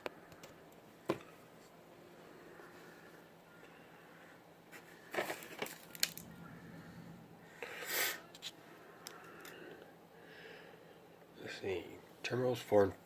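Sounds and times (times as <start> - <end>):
rustling scrape: 4.7 - 7.0.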